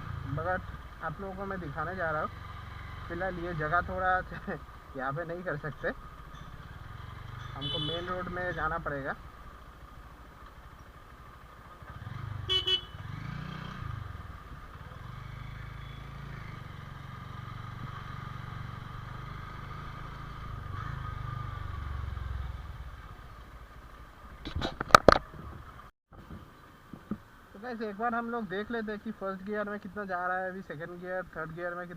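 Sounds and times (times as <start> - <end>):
motorcycle engine running: 0.0 - 24.4
motorcycle horn toot: 7.5 - 8.4, 12.4 - 13.1.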